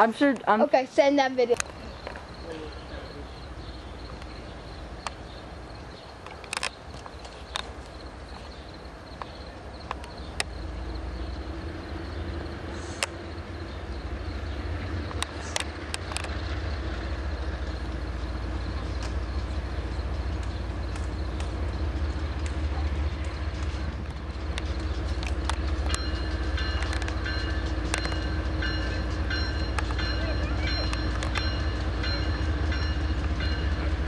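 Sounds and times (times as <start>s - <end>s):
locomotive rumble: 0.0s - 34.0s
sharp clicks: 20.4s - 21.6s, 23.2s - 28.5s, 29.6s - 30.0s.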